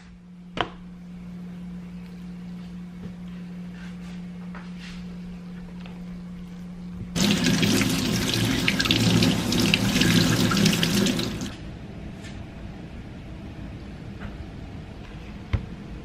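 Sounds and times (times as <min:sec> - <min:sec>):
tap water running into sink: 0:07.2 - 0:11.6.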